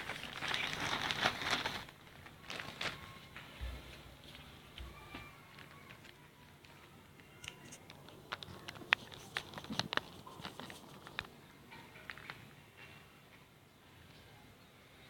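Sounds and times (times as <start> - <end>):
packaging handling clicks and taps: 5.5 - 11.3.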